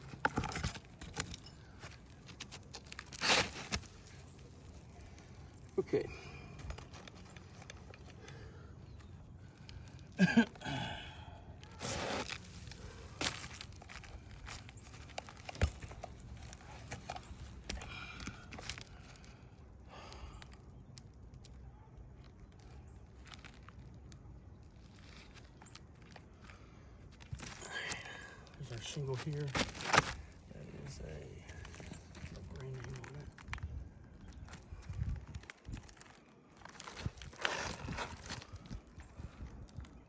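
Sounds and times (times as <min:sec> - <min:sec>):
knocks and scuffs on shingle roof: 0:00.0 - 0:04.4, 0:11.8 - 0:18.9, 0:29.2 - 0:30.5
scraping rustle: 0:00.0 - 0:05.8
footsteps on shingle roof: 0:27.2 - 0:33.8.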